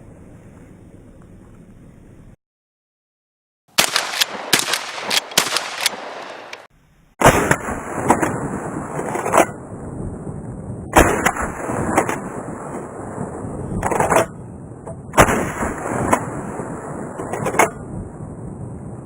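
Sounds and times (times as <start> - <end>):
rapid shotgun shots: 3.7 - 8.6, 11.0 - 12.6, 15.2 - 17.2.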